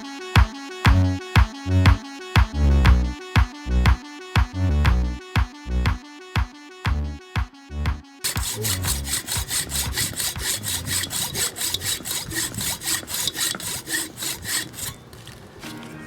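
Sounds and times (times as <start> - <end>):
background music: 0.0 - 15.0, 15.6 - 16.0
hacksaw sawing through wood: 8.2 - 15.5.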